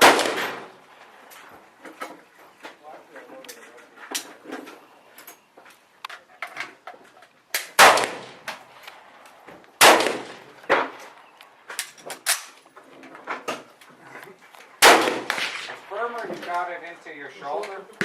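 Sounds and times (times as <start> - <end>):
loud rifle shots: 0.0 - 0.8, 7.6 - 8.8, 9.8 - 11.1, 14.8 - 16.1
fainter sharp cracks: 0.0 - 1.1, 7.5 - 12.6, 14.6 - 16.8.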